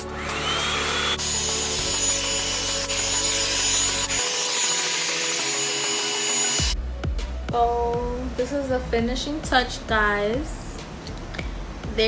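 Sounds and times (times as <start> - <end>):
hair dryer air rushing: 0.0 - 6.8.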